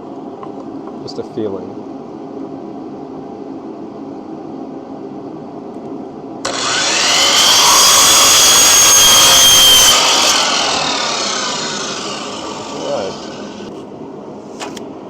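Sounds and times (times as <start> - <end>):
steady low hum: 0.0 - 15.0
woodworking power tool whining: 6.5 - 13.7.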